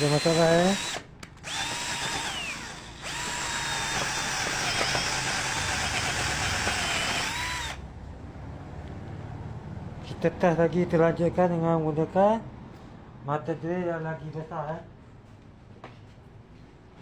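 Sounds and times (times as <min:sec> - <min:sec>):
cordless drill motor whining: 0:00.0 - 0:07.8.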